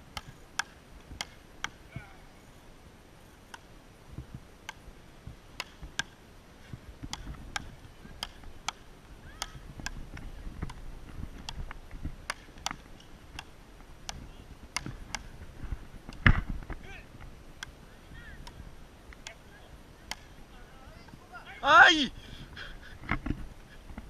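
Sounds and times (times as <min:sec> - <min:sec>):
ball hitting wooden paddles: 0:07.0 - 0:15.4.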